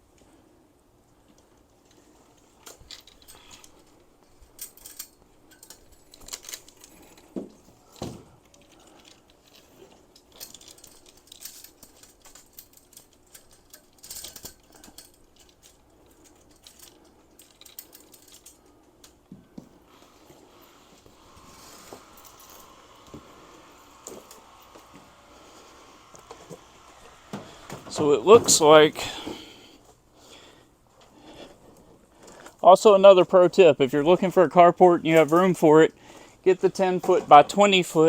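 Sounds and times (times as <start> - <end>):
metal chain clinking: 1.8 - 19.2, 19.9 - 26.1.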